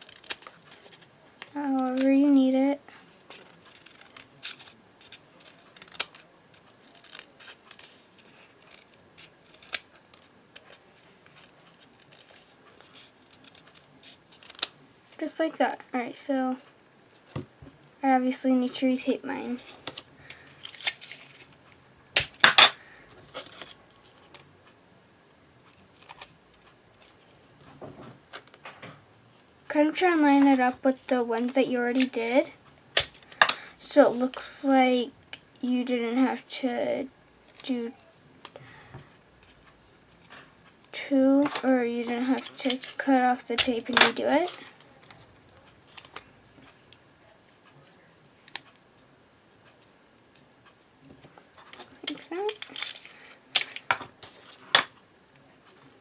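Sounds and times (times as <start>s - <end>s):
sticky tape peeling and tearing: 0.0s - 1.1s, 3.3s - 14.8s
tape and paper handling: 0.0s - 15.7s, 19.5s - 24.5s, 30.0s - 34.5s, 39.4s - 48.8s, 51.1s - 55.0s.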